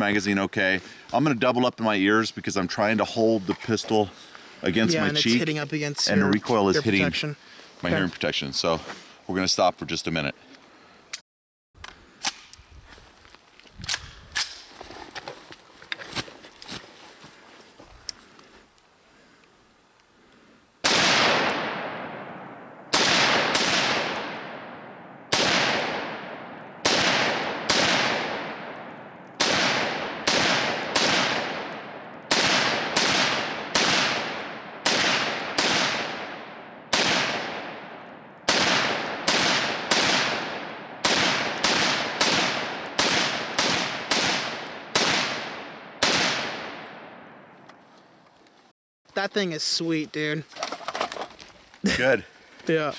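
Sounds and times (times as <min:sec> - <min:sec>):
pistol gunshots echoing: 0:20.8 - 0:47.4.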